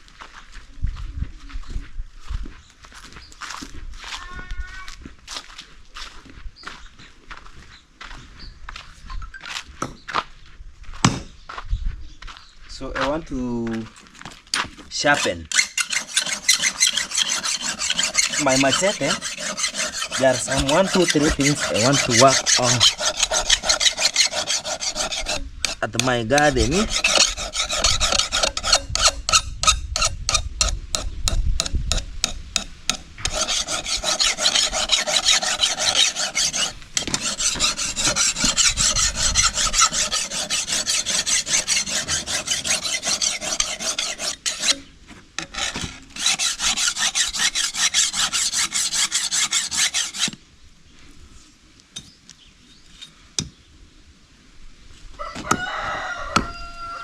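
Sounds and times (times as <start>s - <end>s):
machete blade being sharpened: 15.2s - 25.8s, 26.6s - 30.4s, 33.3s - 50.4s
rooster crowing: 55.2s - 57.0s.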